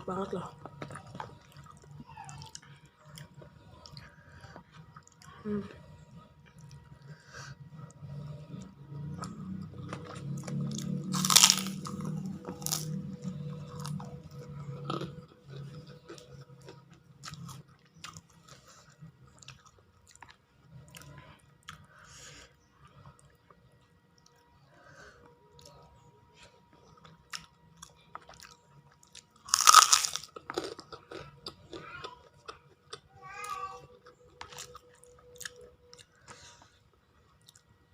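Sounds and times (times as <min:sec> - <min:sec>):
chewing: 0:00.5 - 0:33.1, 0:34.0 - 0:37.8
crunch of crisp food: 0:08.6 - 0:21.9, 0:26.7 - 0:33.1, 0:33.8 - 0:36.7.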